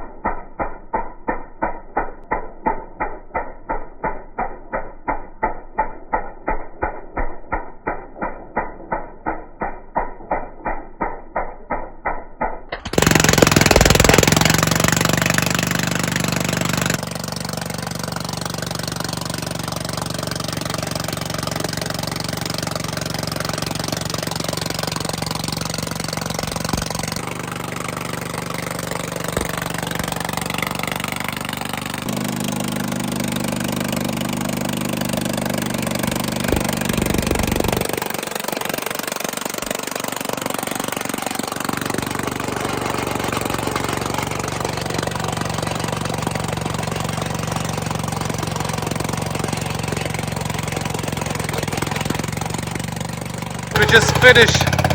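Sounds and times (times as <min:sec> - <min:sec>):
wheel grinding wood: 0:12.8 - 0:32.2, 0:34.6 - 0:54.9
stump grinder engine drone: 0:12.8 - 0:54.9.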